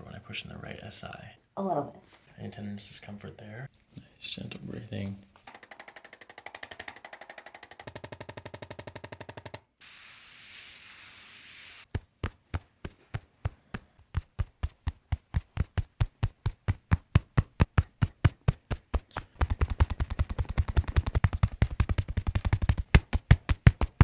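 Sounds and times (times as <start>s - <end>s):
sharp percussive taps: 5.5s - 9.6s, 11.9s - 24.0s
soft hiss: 9.8s - 14.8s.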